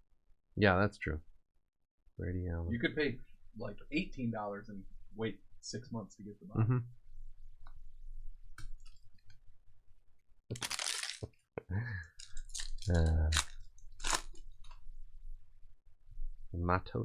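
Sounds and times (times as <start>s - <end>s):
foil wrappers crinkling and tearing: 10.5s - 11.3s, 12.2s - 14.4s.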